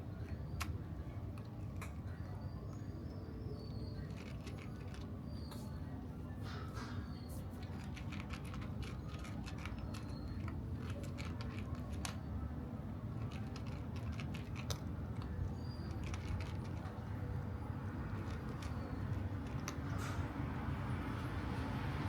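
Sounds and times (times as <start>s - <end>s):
cats crunching dry food: 4.0s - 5.2s, 7.4s - 12.3s, 12.9s - 20.3s.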